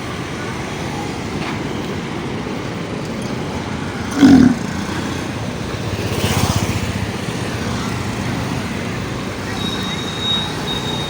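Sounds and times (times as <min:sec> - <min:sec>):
road traffic: 0:00.0 - 0:11.0
bull throaty rattle: 0:04.0 - 0:05.4
bull calling: 0:04.1 - 0:05.2.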